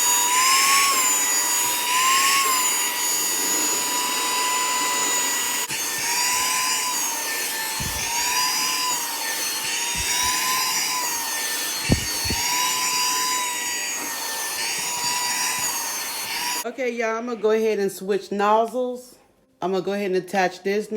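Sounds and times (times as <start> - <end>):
vacuum motor whine: 0.0 - 16.6
soft low bumps: 7.8 - 8.5, 9.9 - 10.6, 11.8 - 12.6.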